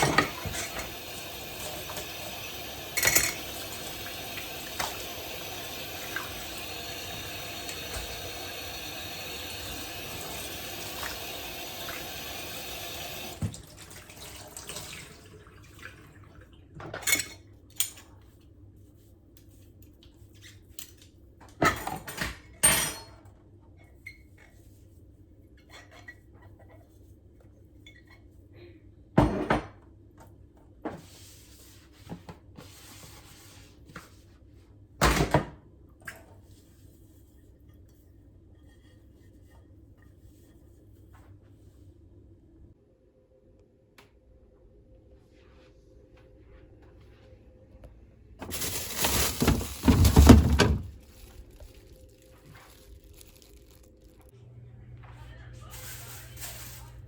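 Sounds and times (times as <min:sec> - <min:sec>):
dishes clattering: 0:00.0 - 0:01.0, 0:01.6 - 0:05.1, 0:48.4 - 0:51.1
kitchen tap running: 0:00.0 - 0:16.5, 0:48.4 - 0:54.3.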